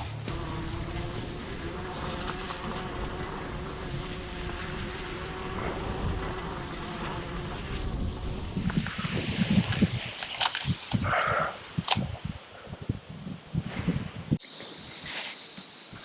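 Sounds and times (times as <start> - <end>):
vehicle engine rumbling: 0.0 - 3.2.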